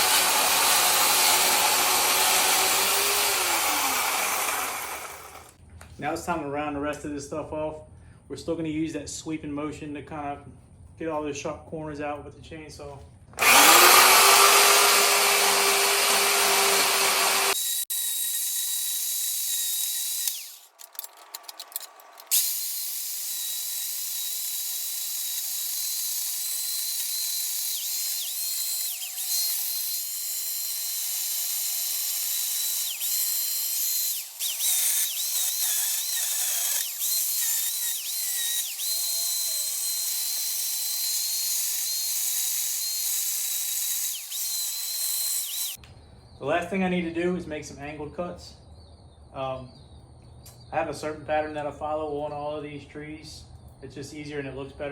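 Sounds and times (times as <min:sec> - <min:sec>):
electric chainsaw cutting wood: 0:00.0 - 0:05.6, 0:13.4 - 0:20.8, 0:22.2 - 0:45.8.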